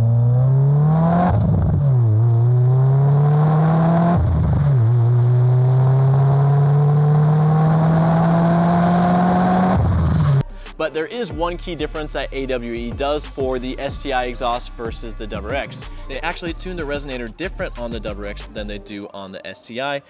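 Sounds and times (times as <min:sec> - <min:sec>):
car engine accelerating hard: 0:00.0 - 0:10.5.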